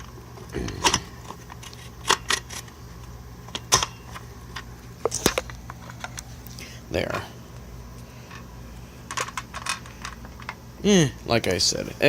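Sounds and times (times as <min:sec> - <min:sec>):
vacuum parts clicking and knocking: 0:00.0 - 0:02.8, 0:03.4 - 0:06.2, 0:08.3 - 0:10.6.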